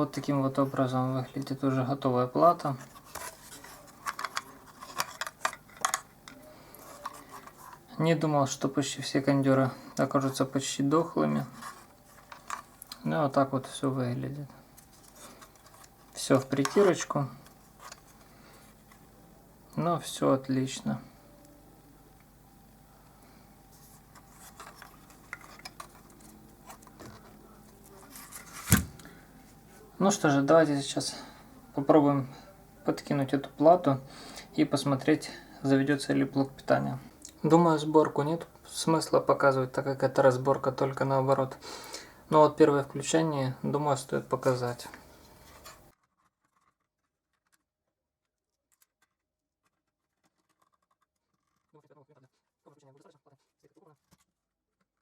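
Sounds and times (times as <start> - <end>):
faint room hiss: 0.0 - 46.0.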